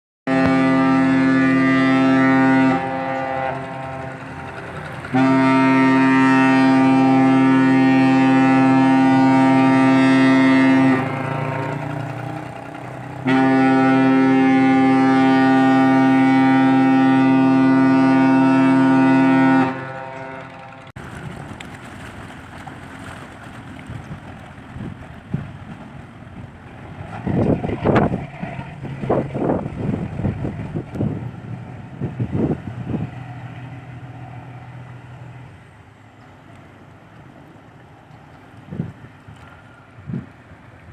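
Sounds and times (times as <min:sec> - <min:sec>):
ship's horn blasts: 0:00.3 - 0:20.9
wind on microphone: 0:23.2 - 0:33.8, 0:38.5 - 0:40.9.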